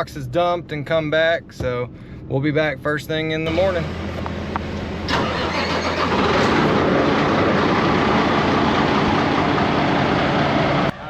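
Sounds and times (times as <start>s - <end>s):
engine starting and running: 3.5s - 11.0s.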